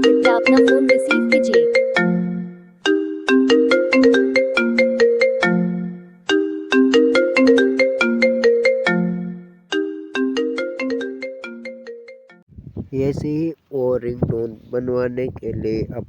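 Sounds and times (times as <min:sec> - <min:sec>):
phone ringtone melody: 0:00.0 - 0:12.4.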